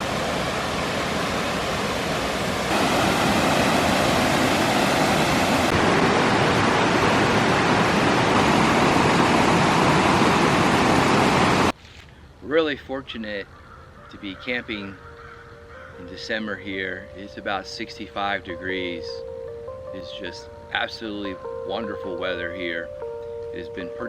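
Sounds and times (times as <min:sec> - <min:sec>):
waterfall rushing water: 0:00.0 - 0:11.7.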